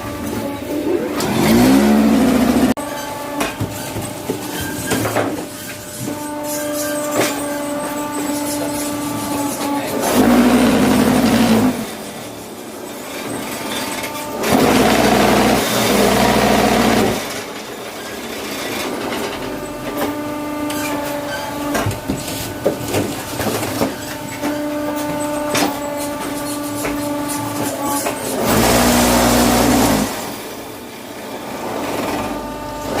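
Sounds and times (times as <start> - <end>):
vibrator motor humming: 0.0 - 4.5.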